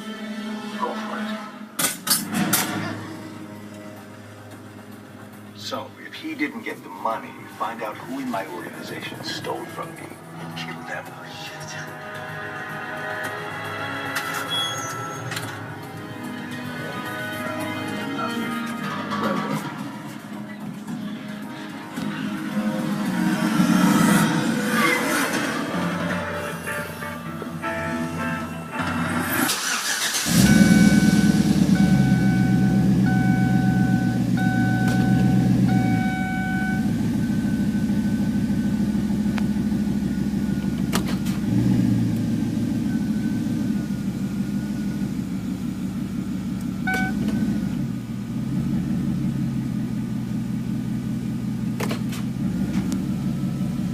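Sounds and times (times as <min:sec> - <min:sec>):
car engine starting and idling: 0:02.1 - 0:10.7, 0:27.6 - 0:53.9
dashboard warning chime beeping: 0:29.6 - 0:41.3, 0:42.5 - 0:45.1, 0:46.8 - 0:47.4.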